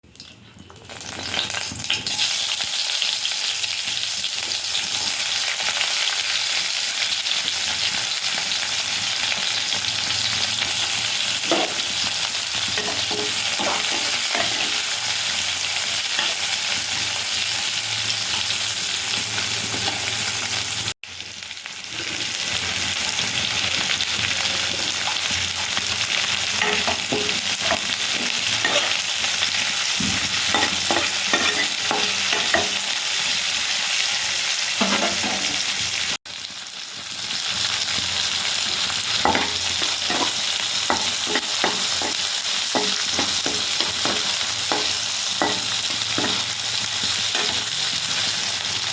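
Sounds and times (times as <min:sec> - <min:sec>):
food sizzling in hot oil: 0:00.1 - 0:48.9
spoon clinking and scraping pan: 0:12.7 - 0:15.0, 0:16.0 - 0:16.6, 0:26.6 - 0:29.2, 0:30.4 - 0:32.9, 0:39.2 - 0:46.6, 0:47.2 - 0:48.2.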